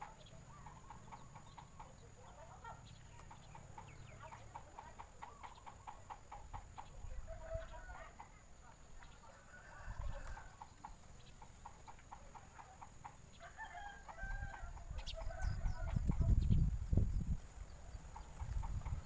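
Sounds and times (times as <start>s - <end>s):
rooster crowing: 9.3s - 10.6s, 13.4s - 16.0s.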